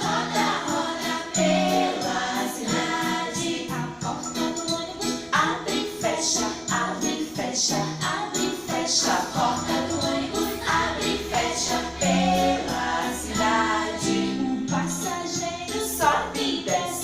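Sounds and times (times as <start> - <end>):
children's song with singing: 0.0 - 17.0.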